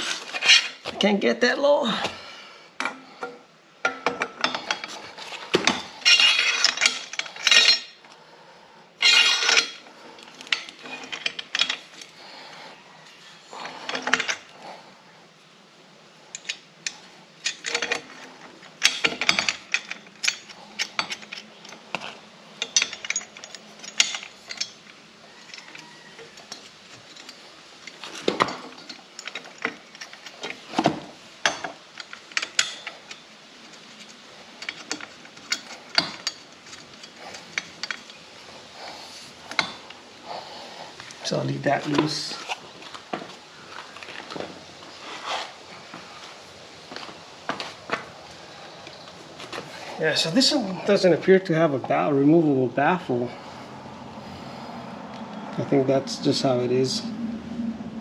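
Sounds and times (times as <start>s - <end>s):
hand tools clinking on metal: 5.6s - 8.0s, 9.0s - 12.1s, 16.4s - 18.2s, 18.8s - 22.0s, 22.6s - 33.2s, 34.0s - 38.2s, 39.4s - 40.4s.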